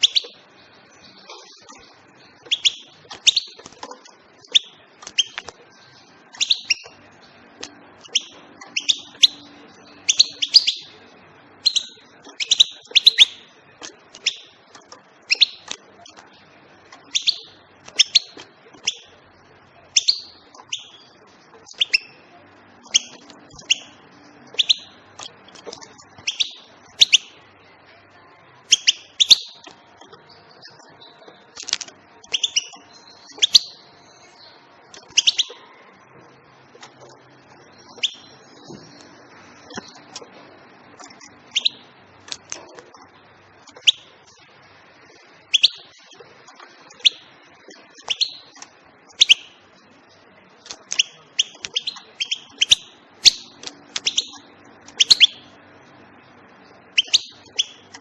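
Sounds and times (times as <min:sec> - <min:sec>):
goldfinch chirping call notes: 0:00.0 - 0:00.4, 0:01.0 - 0:03.6, 0:04.4 - 0:05.5, 0:06.3 - 0:07.0, 0:08.0 - 0:11.0, 0:11.6 - 0:13.5, 0:14.2 - 0:14.6, 0:15.3 - 0:15.8, 0:17.0 - 0:19.1, 0:19.9 - 0:22.2, 0:22.8 - 0:27.4, 0:28.6 - 0:29.7, 0:32.2 - 0:34.4, 0:35.0 - 0:35.6, 0:37.8 - 0:39.1, 0:41.0 - 0:41.9, 0:45.5 - 0:46.2, 0:46.9 - 0:47.3, 0:48.0 - 0:49.6, 0:50.9 - 0:55.6, 0:56.9 - 0:58.0.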